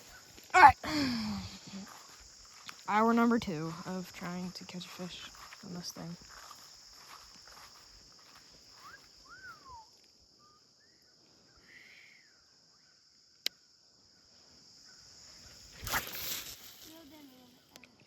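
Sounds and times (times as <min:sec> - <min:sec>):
crickets chirping: 0:00.0 - 0:18.0
bird whistles: 0:08.8 - 0:10.6.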